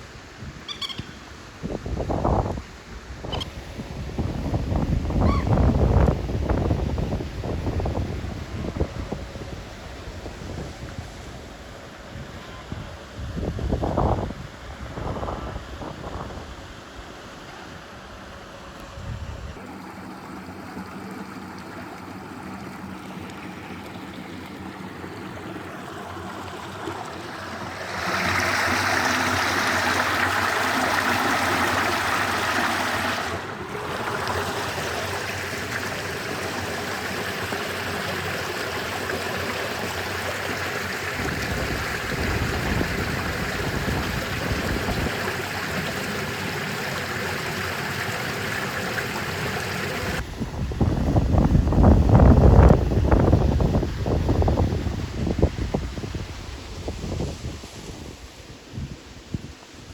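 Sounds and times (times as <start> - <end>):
stream water running over rocks: 19.6 - 50.2.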